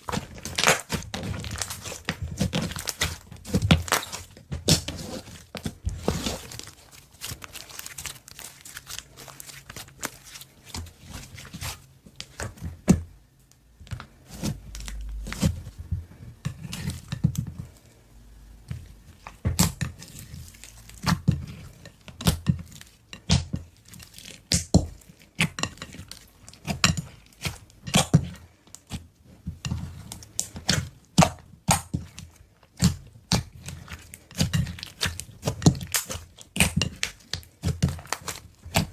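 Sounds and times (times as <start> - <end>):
slime crackling and popping: 0.0 - 12.5, 19.3 - 29.0, 30.1 - 38.9.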